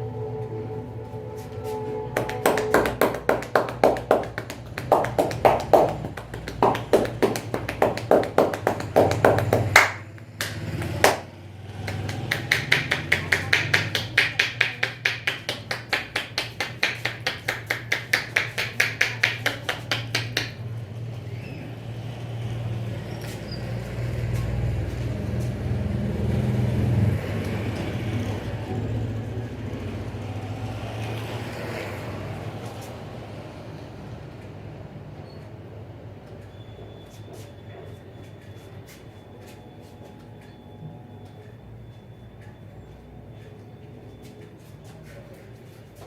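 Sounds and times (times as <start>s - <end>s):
hands slapping head rhythmically: 2.2s - 20.7s.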